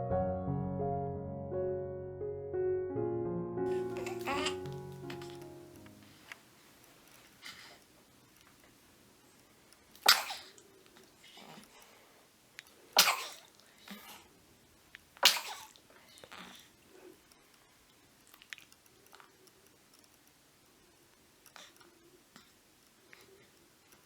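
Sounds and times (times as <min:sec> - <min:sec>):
baby sneezing: 0:03.7 - 0:05.4, 0:10.0 - 0:10.6, 0:13.0 - 0:14.1, 0:15.2 - 0:15.8
faint small baby sounds: 0:03.7 - 0:05.5.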